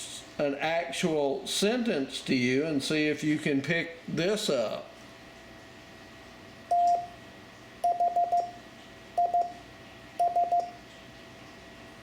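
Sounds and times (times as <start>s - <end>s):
morse code beeps: 6.7s - 7.2s, 7.8s - 8.6s, 9.2s - 9.6s, 10.2s - 10.8s.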